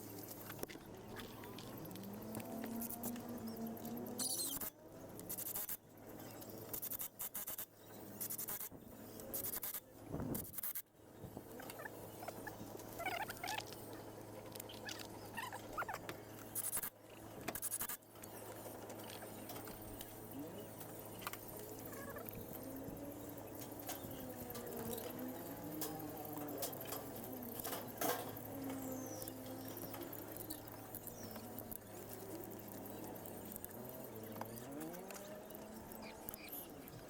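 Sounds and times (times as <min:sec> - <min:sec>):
faint chirps: 0:02.6 - 0:04.7, 0:11.6 - 0:37.0
steady low hum: 0:07.8 - 0:37.0
clattering of hand tools on engine: 0:23.5 - 0:30.1.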